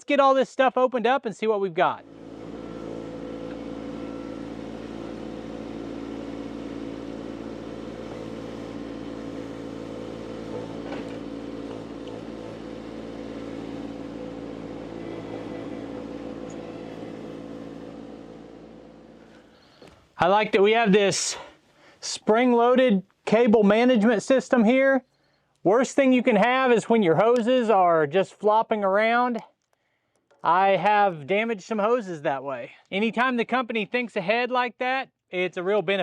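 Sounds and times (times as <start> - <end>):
skid steer engine running: 2.0 - 20.0.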